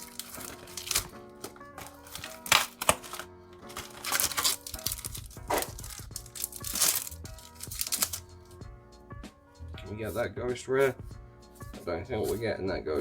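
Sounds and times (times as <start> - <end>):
foil wrappers crinkling and tearing: 0.0 - 8.3
background music: 0.0 - 13.0.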